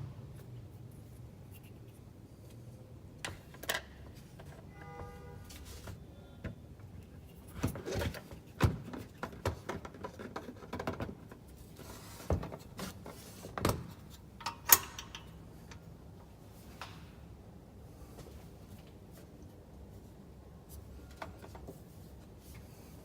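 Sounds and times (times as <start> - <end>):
clicks and knocks of handling: 7.5 - 11.5.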